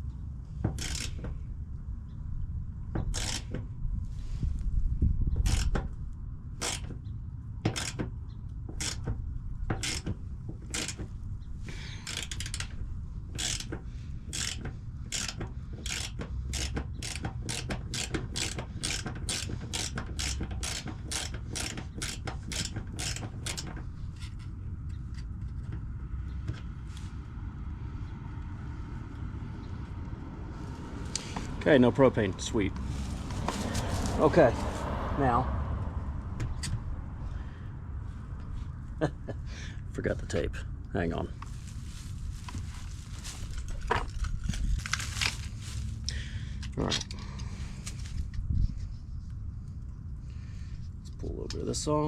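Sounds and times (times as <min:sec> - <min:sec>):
ratchet wrench clicking: 0:00.7 - 0:01.3, 0:03.1 - 0:03.6, 0:05.4 - 0:05.8, 0:06.6 - 0:06.9, 0:07.7 - 0:08.1, 0:08.8 - 0:09.1, 0:09.8 - 0:11.0, 0:12.0 - 0:12.8, 0:13.4 - 0:24.3.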